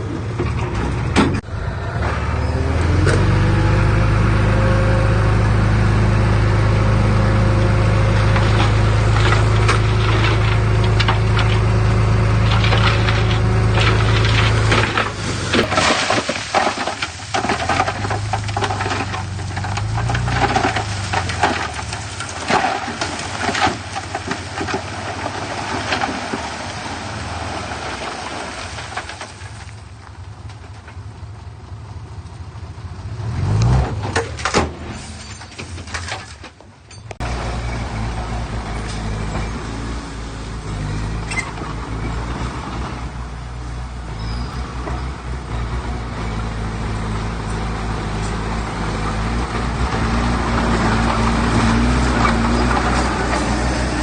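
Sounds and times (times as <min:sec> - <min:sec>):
machinery clanking and knocking: 0:00.0 - 0:03.5, 0:07.6 - 0:26.7, 0:44.5 - 0:54.0
diesel engine running under load: 0:00.0 - 0:36.0, 0:37.0 - 0:54.0
engine revving: 0:01.5 - 0:15.8, 0:33.2 - 0:34.3.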